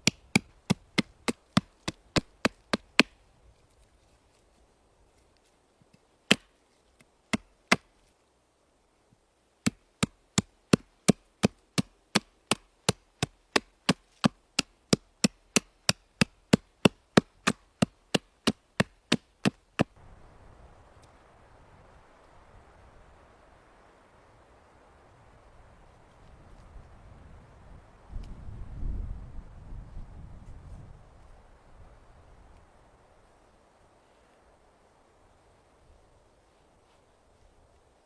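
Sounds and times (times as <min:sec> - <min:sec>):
blade chopping wood: 0:00.0 - 0:03.2, 0:06.3 - 0:06.5, 0:07.3 - 0:07.9, 0:09.6 - 0:19.9
faint hiss: 0:01.4 - 0:10.7, 0:19.8 - 0:38.0.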